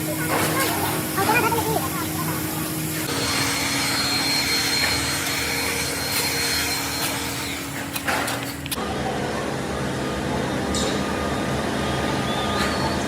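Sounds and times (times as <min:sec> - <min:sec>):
machine tool motor whining: 0:02.6 - 0:08.8.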